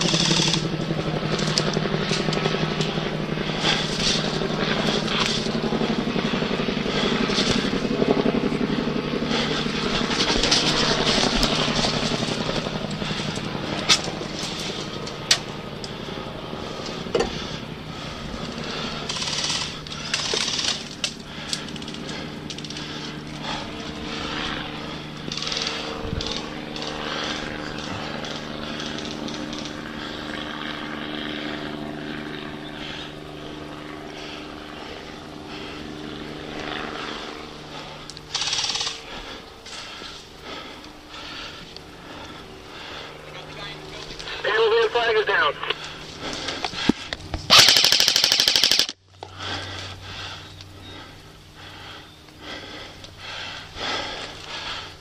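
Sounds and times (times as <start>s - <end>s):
sharp cracks: 0.0s - 0.6s, 47.5s - 49.0s
engine drone: 0.0s - 55.0s.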